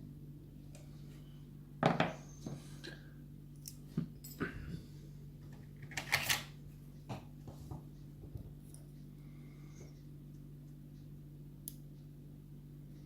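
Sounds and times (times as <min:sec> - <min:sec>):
metal lock parts clicking: 0:05.9 - 0:06.5.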